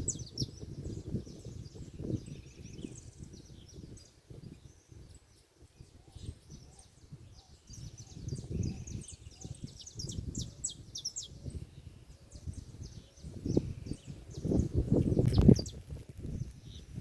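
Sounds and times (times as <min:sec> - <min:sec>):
low gusty rumble: 0:00.0 - 0:04.7
birds chirping: 0:00.0 - 0:17.0.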